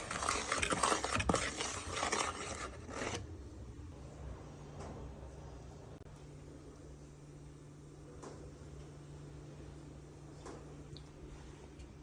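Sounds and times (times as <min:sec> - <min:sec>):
utensil scraping a pan: 0:00.0 - 0:03.2.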